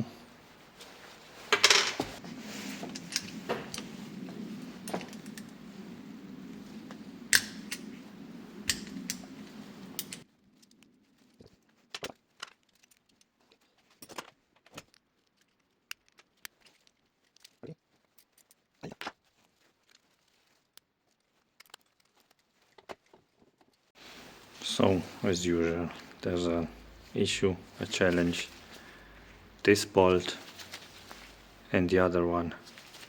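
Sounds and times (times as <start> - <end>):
metal tools clinking and tapping: 10.0 - 10.2
low steady hum: 24.0 - 33.0.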